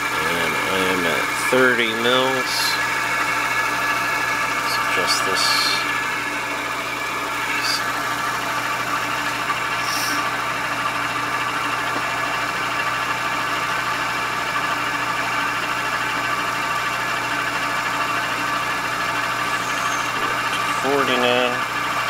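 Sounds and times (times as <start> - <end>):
milling machine spindle humming: 0.0 - 22.0.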